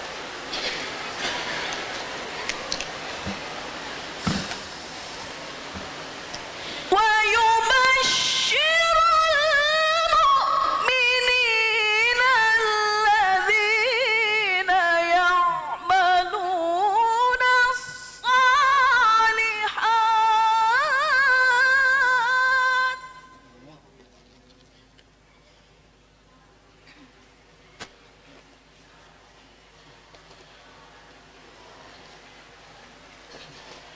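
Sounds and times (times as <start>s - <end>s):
person reciting melodically: 6.9s - 23.4s.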